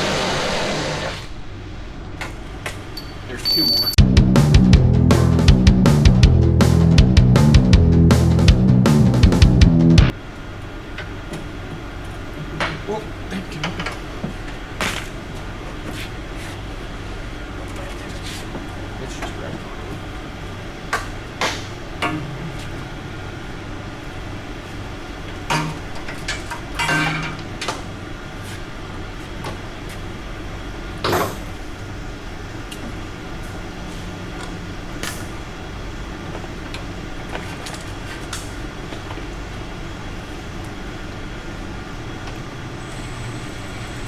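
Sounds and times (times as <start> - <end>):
steady background hum: 0.0 - 44.0
metal tools clanking: 2.9 - 4.0, 21.4 - 23.1, 25.4 - 27.9.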